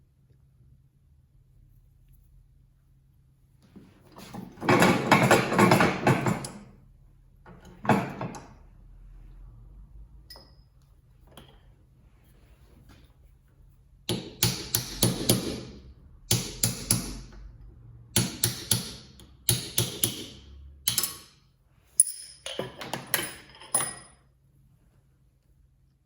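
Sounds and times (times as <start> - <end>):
hammer tapping on metal: 14.1 - 17.3, 18.2 - 21.3.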